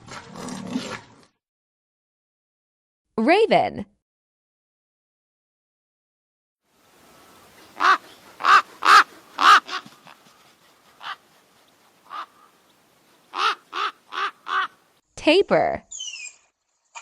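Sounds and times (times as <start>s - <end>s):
raven cawing: 7.4s - 11.3s, 12.0s - 12.7s, 13.3s - 14.9s.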